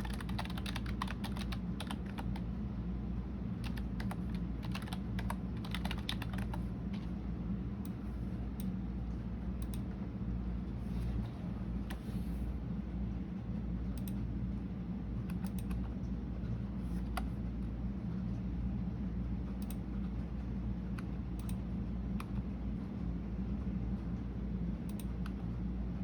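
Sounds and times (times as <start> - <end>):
keyboard typing clicks: 0.0 - 2.4, 3.6 - 7.1, 15.3 - 15.8, 21.4 - 21.6, 24.9 - 25.4
steady low hum: 0.0 - 26.0.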